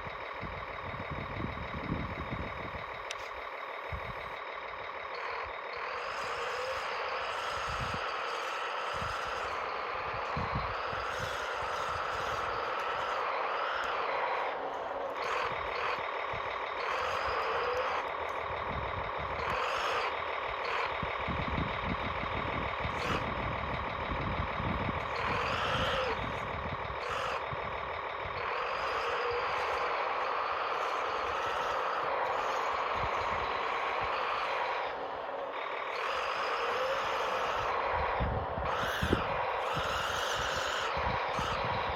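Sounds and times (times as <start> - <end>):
toy vehicle motors whining: 0.0 - 41.9
tracks rattling: 0.0 - 41.9.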